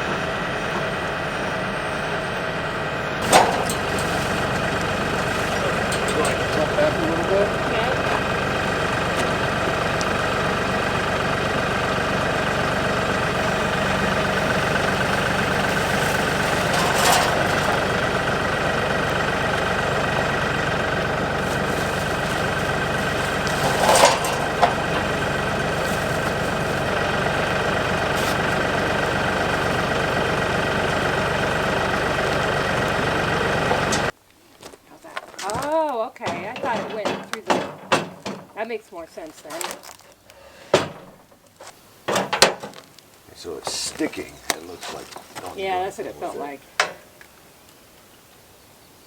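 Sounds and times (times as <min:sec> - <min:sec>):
tractor engine running: 0:00.0 - 0:34.2, 0:35.5 - 0:47.6
metallic clanks: 0:03.2 - 0:34.1, 0:36.2 - 0:38.8, 0:42.1 - 0:42.8.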